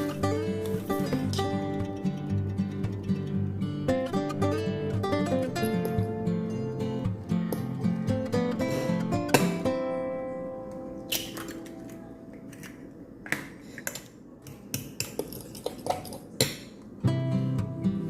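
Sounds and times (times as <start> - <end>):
acoustic guitar music: 0.0 - 12.4, 17.0 - 18.0
dishes clinking: 5.5 - 6.2.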